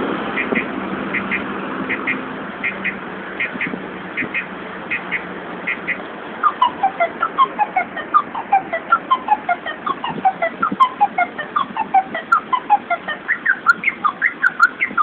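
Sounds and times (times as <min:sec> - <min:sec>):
car alarm siren: 0:05.1 - 0:15.0.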